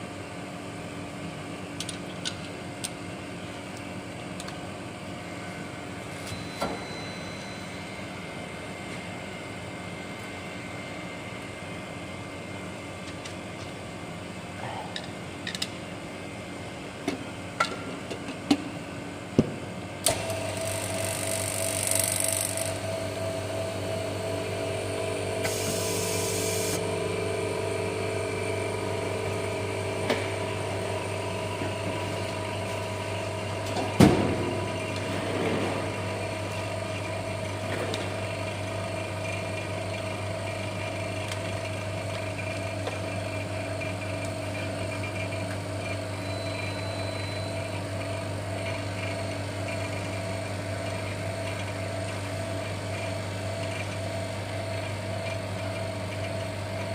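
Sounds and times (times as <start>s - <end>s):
machine hum: 19.9s - 46.0s.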